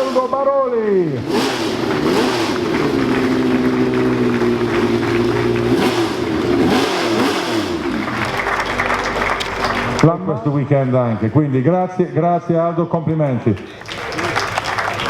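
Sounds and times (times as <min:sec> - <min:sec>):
racing car engine revving: 0:00.0 - 0:11.4.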